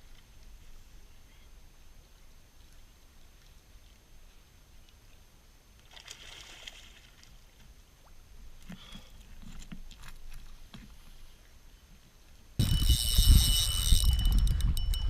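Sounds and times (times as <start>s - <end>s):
water sloshing and splashing: 5.8s - 11.3s.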